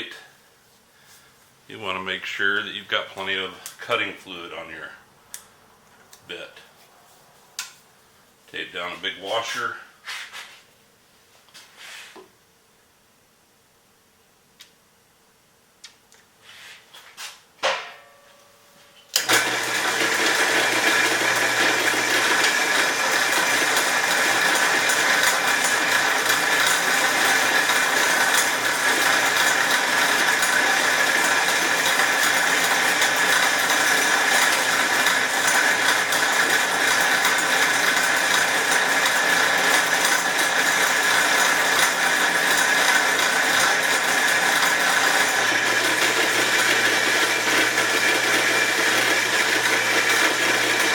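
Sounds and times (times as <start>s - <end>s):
drill press cutting steel: 19.1s - 50.9s.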